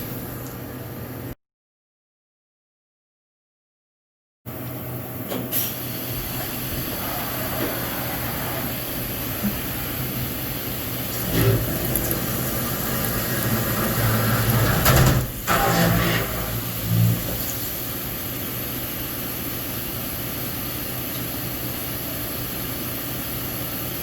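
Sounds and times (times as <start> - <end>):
milling machine running: 6.1 - 20.6.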